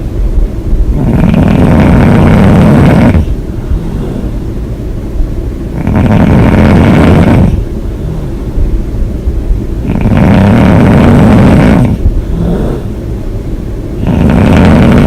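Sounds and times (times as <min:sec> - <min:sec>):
woman snoring: 0:00.9 - 0:04.4, 0:05.7 - 0:08.3, 0:09.8 - 0:13.0, 0:14.0 - 0:15.0
quiet breathing: 0:01.0 - 0:04.7, 0:05.7 - 0:08.9, 0:09.8 - 0:13.1.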